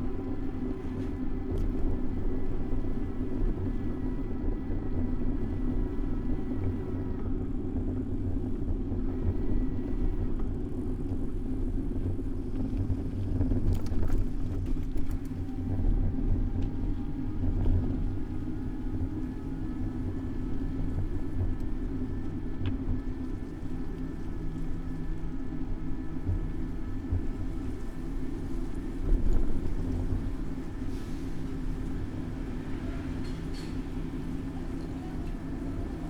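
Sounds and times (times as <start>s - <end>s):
faint whining tones: 0.0s - 36.0s
city road traffic rumble: 27.1s - 36.0s.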